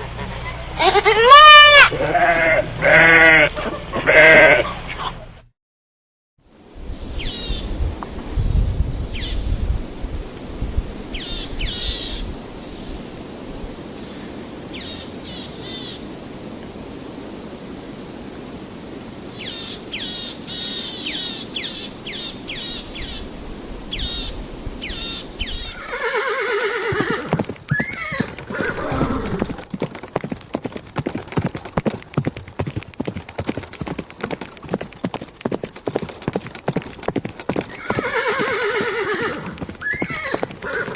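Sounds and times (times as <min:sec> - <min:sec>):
short high falling calls: 0:06.6 - 0:08.1, 0:08.7 - 0:26.3
hooves clip-clopping: 0:06.9 - 0:40.9
horse whinnying: 0:25.8 - 0:29.6.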